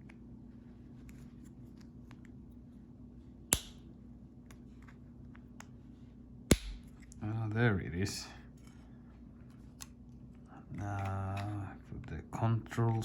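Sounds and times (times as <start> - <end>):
sharp plastic snaps: 3.5 - 3.9, 6.5 - 7.2.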